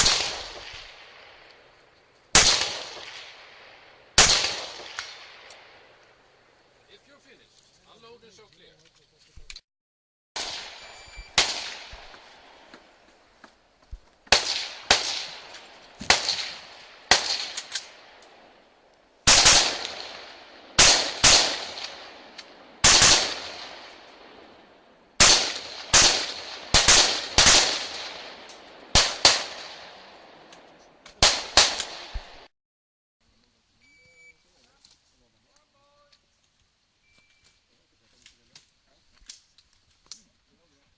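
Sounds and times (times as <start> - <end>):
rifle shots with echo: 0.0 - 1.7, 2.3 - 6.4, 10.4 - 12.9, 14.3 - 32.5.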